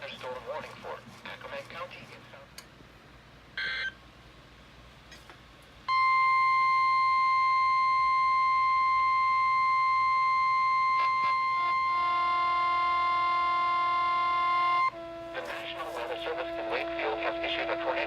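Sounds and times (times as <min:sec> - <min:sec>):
steady electronic alarm beep: 0:03.6 - 0:04.0, 0:05.9 - 0:13.9.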